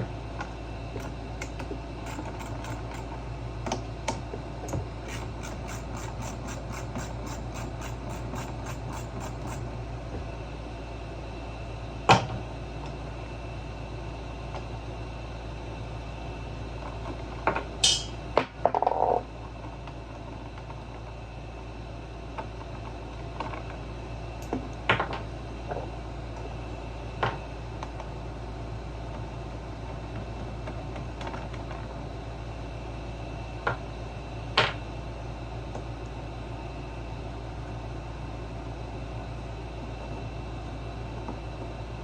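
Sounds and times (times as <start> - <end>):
low background hum: 0.0 - 42.0
hand tools clicking and knocking: 1.0 - 3.1, 4.7 - 9.6.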